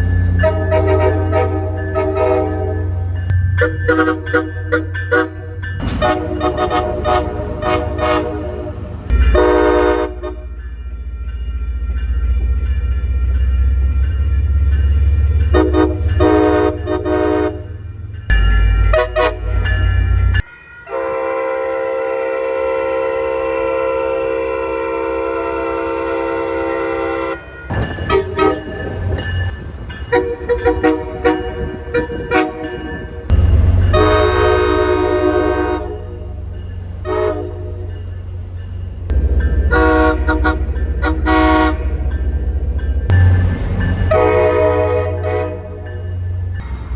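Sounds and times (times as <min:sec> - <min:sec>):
low train rumble: 0:00.0 - 0:46.9
train air horn blasts: 0:00.4 - 0:10.5, 0:15.6 - 0:17.8, 0:18.9 - 0:19.6, 0:20.9 - 0:28.8, 0:30.1 - 0:32.8, 0:33.9 - 0:36.4, 0:37.0 - 0:37.9, 0:39.7 - 0:42.0, 0:44.1 - 0:45.9.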